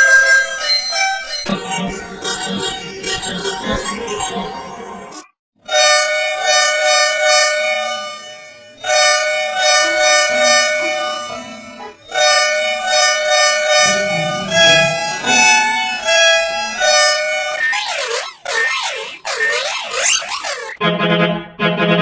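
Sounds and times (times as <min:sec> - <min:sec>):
two-note bus horn blasts: 0:05.7 - 0:17.6.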